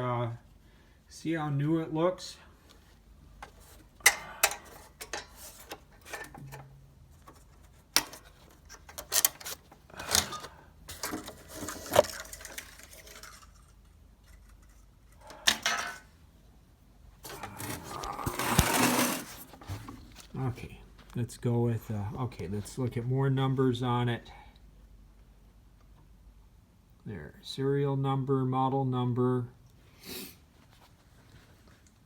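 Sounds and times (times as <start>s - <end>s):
scraping rustle: 17.2s - 20.6s.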